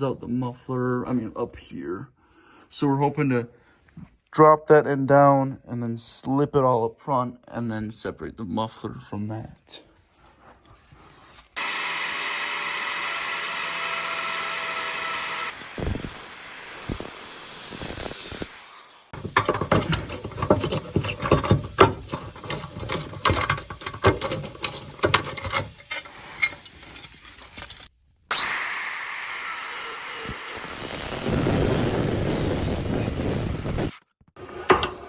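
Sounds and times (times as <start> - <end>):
power tool cutting steel pipe: 11.6 - 35.0
metallic clanks and knocks: 19.2 - 27.5, 34.6 - 35.0.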